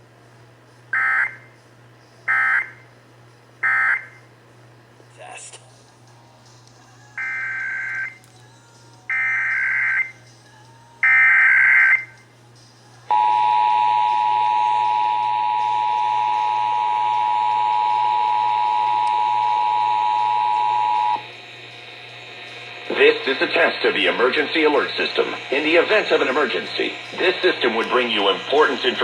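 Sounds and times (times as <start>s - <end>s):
two-tone alert signal: 13.1s - 21.2s
digital data tone bursts: 13.1s - 29.0s.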